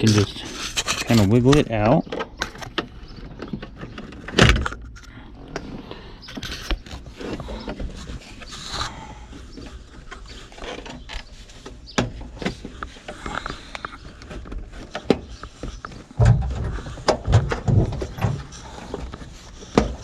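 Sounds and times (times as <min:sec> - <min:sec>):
heavier thumps: 0:16.1 - 0:18.5.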